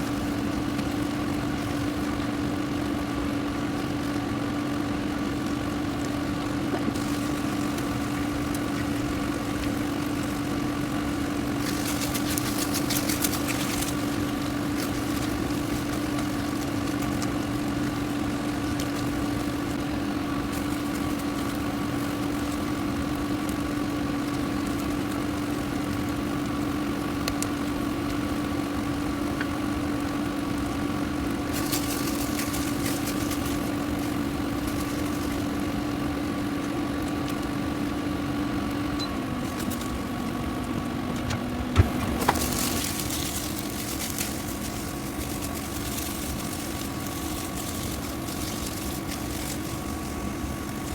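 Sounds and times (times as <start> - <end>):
machine hum: 0.0 - 50.9.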